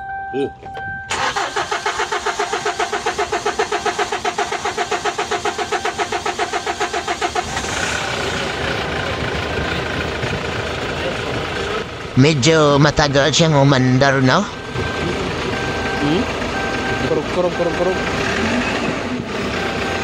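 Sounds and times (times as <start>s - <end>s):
diesel engine running: 0.5s - 20.0s
starter motor cranking engine: 1.1s - 12.0s.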